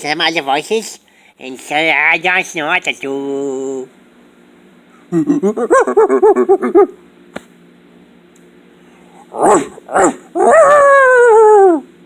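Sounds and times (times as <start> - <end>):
man howling: 5.2 - 7.0, 9.3 - 11.9
man imitating dog yips: 5.2 - 7.0, 9.3 - 11.9.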